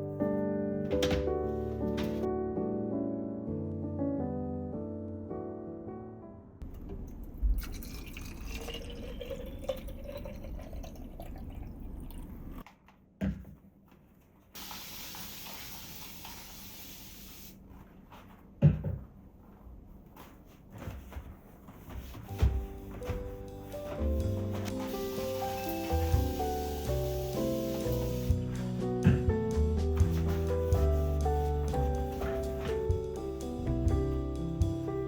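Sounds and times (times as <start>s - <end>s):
tap water filling container: 7.6s - 12.3s
hissing water spray: 14.6s - 17.5s, 24.7s - 28.6s.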